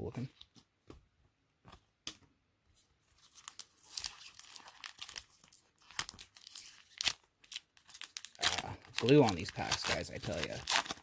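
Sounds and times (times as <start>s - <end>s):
card pack wrapper tearing: 3.2s - 11.0s.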